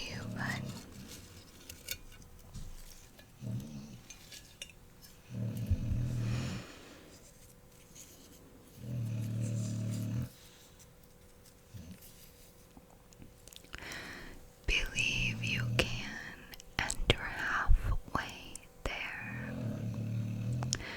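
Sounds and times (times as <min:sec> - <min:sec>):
puppy snoring: 0:00.0 - 0:01.0, 0:05.3 - 0:06.8, 0:08.8 - 0:10.4, 0:19.1 - 0:20.9.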